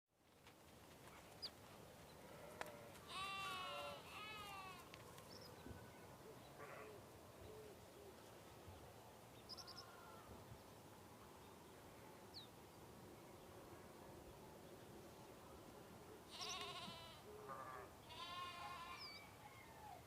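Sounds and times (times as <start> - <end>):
sheep bleating: 2.3 - 4.9, 16.3 - 19.2.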